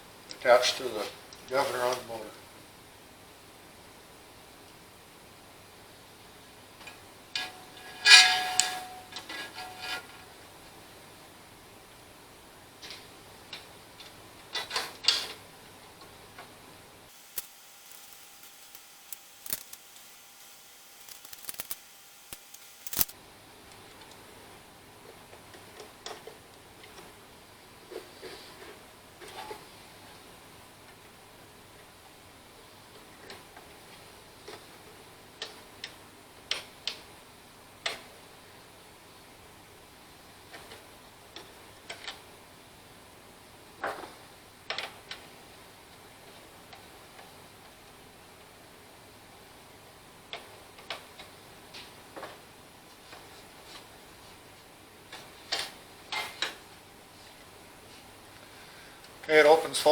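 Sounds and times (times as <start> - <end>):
faint steady hiss: 0.0 - 59.9
hand tools clicking and tapping: 6.8 - 10.3
sharp click: 17.3 - 20.1, 21.0 - 23.2.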